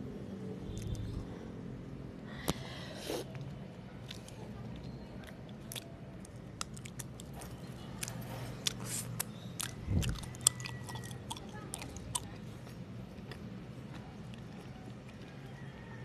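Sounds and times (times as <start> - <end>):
mouth chewing moist clicks: 0.7 - 1.2, 3.3 - 15.5.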